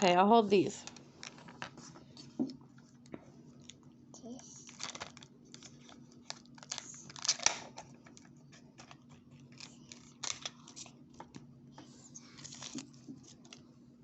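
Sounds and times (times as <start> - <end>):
plastic packaging crinkling: 0.8 - 1.8, 4.6 - 11.4, 12.4 - 13.6
plastic packaging tearing: 4.6 - 7.8.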